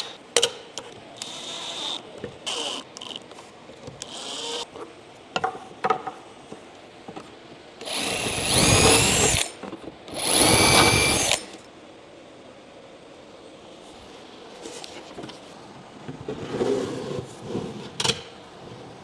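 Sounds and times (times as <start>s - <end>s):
power tool motor whine: 7.8s - 11.6s.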